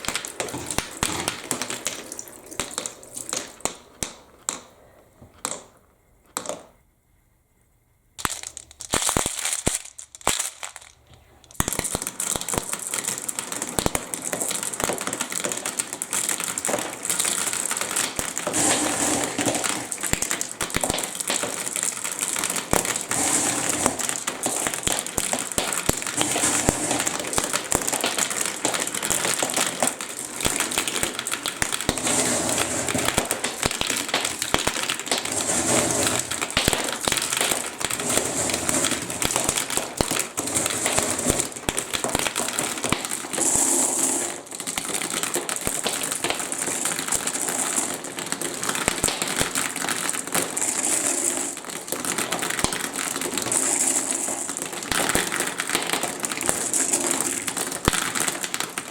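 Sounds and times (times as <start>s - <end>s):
flowing water hiss: 0.0s - 3.8s, 22.6s - 30.5s
marbles clattering down plastic track: 0.0s - 4.7s, 8.2s - 58.9s.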